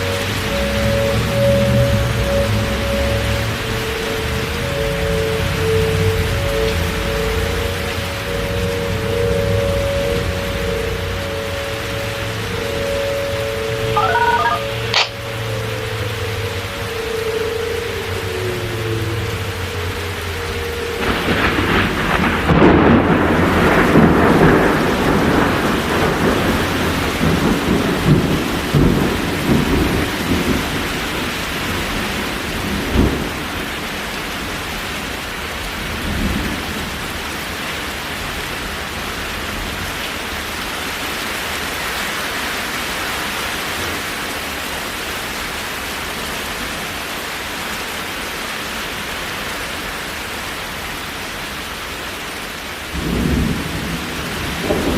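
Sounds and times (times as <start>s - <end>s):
steady rain: 0.0s - 54.9s
thunder rumbling: 21.0s - 31.2s, 52.9s - 54.9s.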